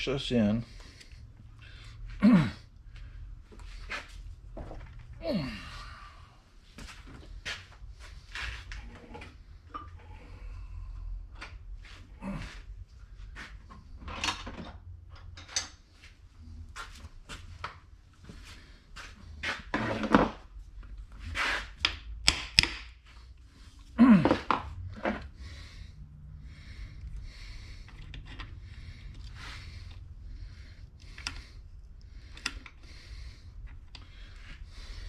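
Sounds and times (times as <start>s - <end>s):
knocks and clunks of tools and parts: 14.0s - 15.8s, 19.7s - 20.4s, 21.8s - 23.0s, 24.2s - 25.3s.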